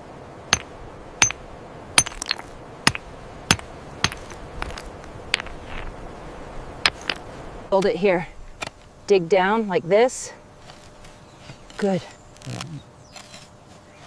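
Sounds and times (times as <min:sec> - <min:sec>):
hard objects knocking: 0:02.0 - 0:05.9, 0:06.9 - 0:07.2.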